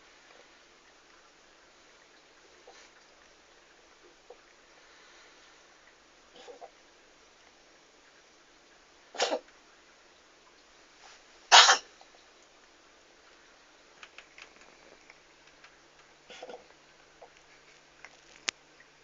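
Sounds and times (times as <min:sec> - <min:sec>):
cat sneezing: 0:09.2 - 0:09.4, 0:11.5 - 0:11.9.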